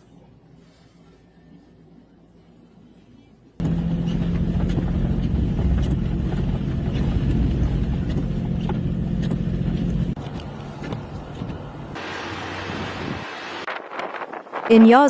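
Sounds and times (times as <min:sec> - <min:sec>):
vehicle engine droning: 0:03.6 - 0:13.7.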